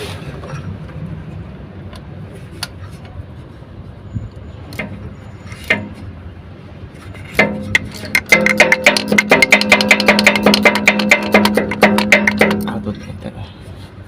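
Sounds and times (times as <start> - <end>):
hand tools clicking and tapping: 7.4 - 12.8.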